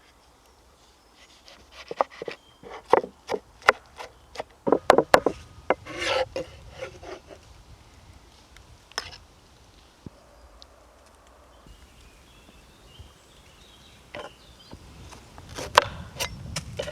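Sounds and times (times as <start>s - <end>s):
sharp wooden knocks: 1.9s - 6.5s, 15.6s - 16.9s
short scraping rub: 5.2s - 7.5s.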